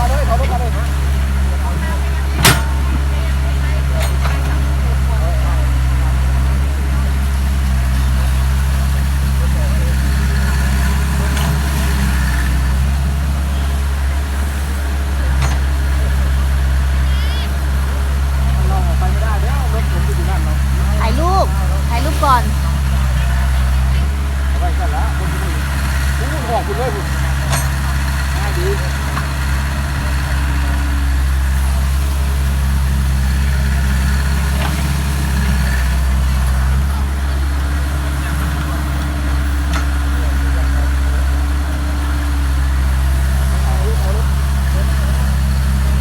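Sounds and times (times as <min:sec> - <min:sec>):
excavator diesel engine running: 0:00.0 - 0:46.0.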